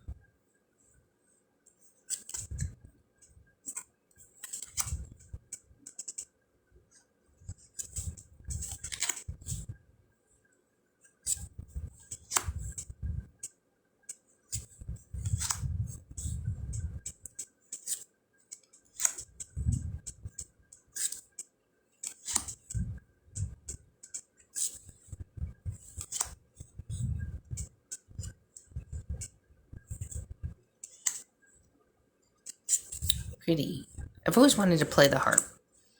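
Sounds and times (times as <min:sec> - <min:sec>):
cards snapping and clicking: 0:18.6 - 0:19.2, 0:22.0 - 0:22.6.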